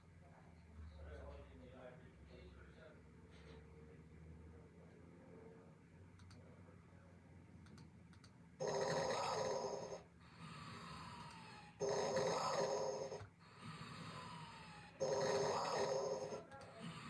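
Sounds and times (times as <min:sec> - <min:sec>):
loud rasping snore: 0:08.6 - 0:10.0, 0:11.8 - 0:17.0.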